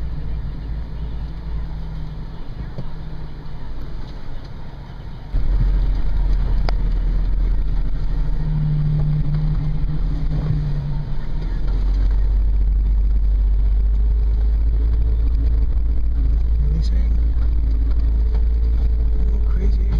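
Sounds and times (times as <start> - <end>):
engine drone: 0.0 - 19.9
engine low rumble: 0.0 - 19.9.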